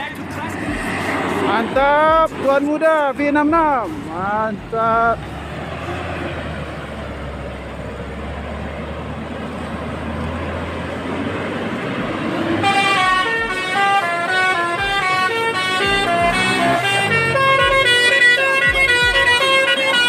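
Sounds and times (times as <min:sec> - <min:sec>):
coach engine and road noise: 0:00.0 - 0:20.0
multi-tone horn tune: 0:12.5 - 0:20.0.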